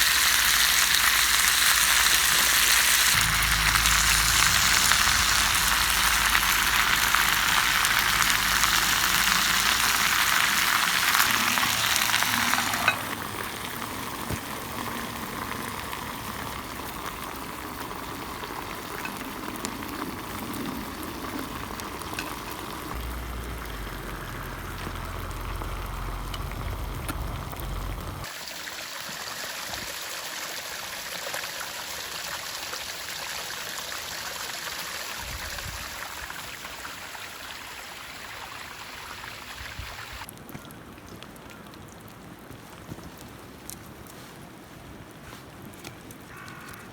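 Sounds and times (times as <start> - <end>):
steady hiss: 0.0 - 18.9
food sizzling in a skillet: 0.0 - 26.6.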